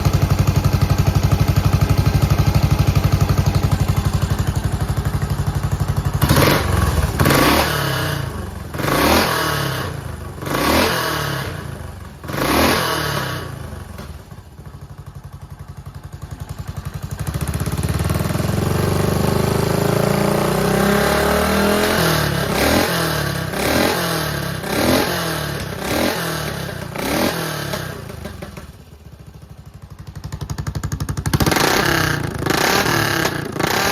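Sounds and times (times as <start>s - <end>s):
motorcycle engine revving: 0.0s - 33.9s.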